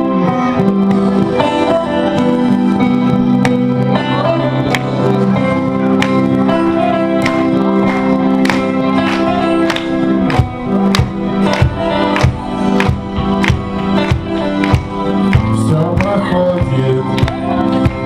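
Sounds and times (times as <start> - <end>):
live band playing: 0.0 - 18.0.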